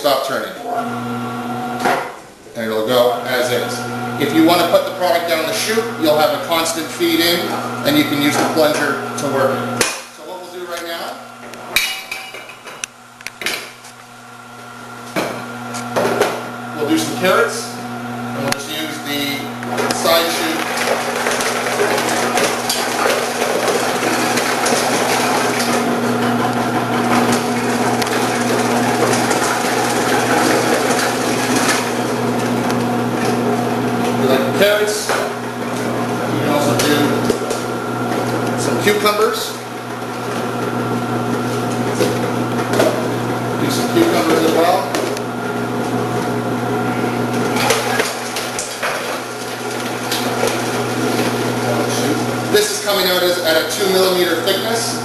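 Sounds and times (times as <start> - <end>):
vegetable processor motor hum: 0.6 - 1.9, 14.5 - 55.0
vegetable cutter motor hum: 19.4 - 38.9.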